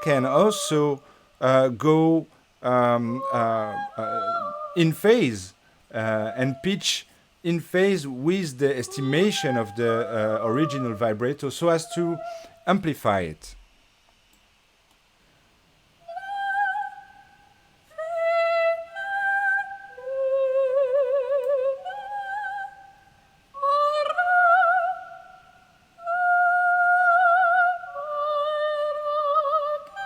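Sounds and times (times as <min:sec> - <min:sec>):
woman singing with heavy vibrato: 0:00.0 - 0:01.2, 0:02.7 - 0:06.9, 0:08.8 - 0:11.1, 0:16.0 - 0:23.0, 0:23.6 - 0:30.0.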